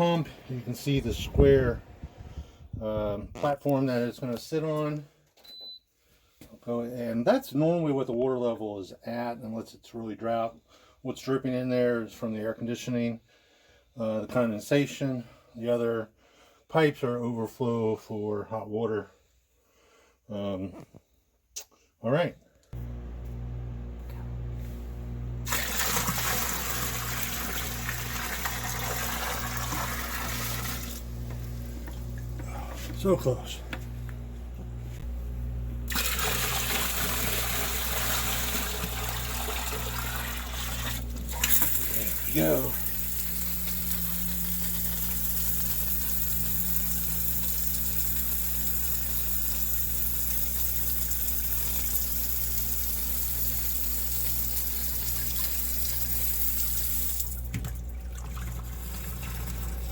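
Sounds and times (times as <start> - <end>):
pump motor humming: 22.8 - 59.9.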